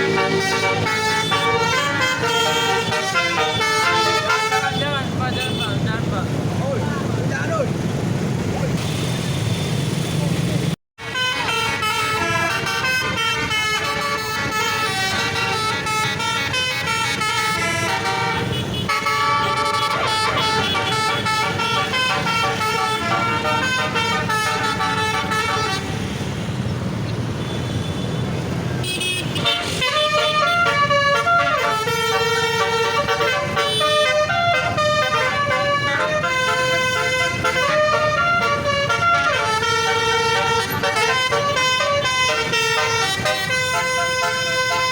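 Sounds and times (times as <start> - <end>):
musical air horn playing tune: 0.0 - 4.8, 11.0 - 26.0, 29.0 - 44.9.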